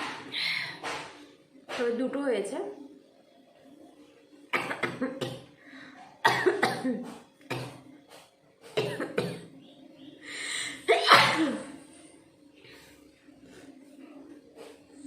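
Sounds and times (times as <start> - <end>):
person coughing: 6.2 - 7.8, 8.7 - 9.5, 10.9 - 11.7
hissing breath: 10.2 - 10.8.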